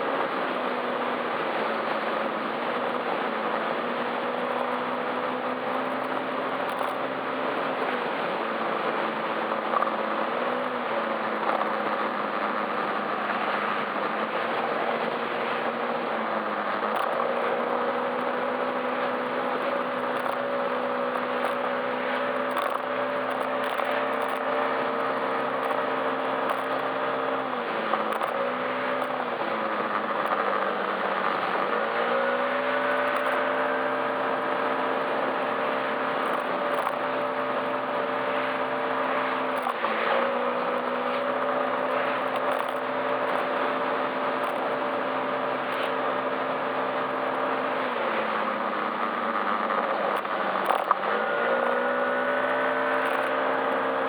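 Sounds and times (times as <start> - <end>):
scooter engine running: 15.0 - 54.0.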